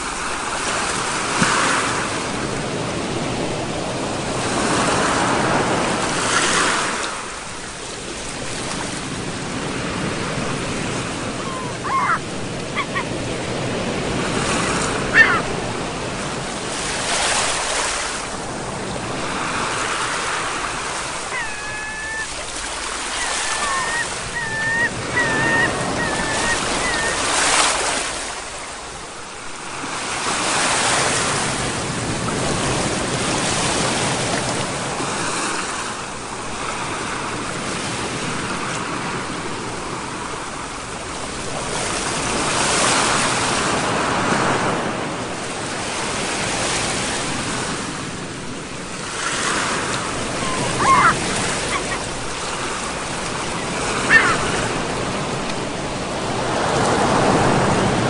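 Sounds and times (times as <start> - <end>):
waves breaking on shore: 0.0 - 58.0
bird calling: 11.2 - 13.6, 14.4 - 15.6, 21.0 - 28.2, 50.0 - 55.0.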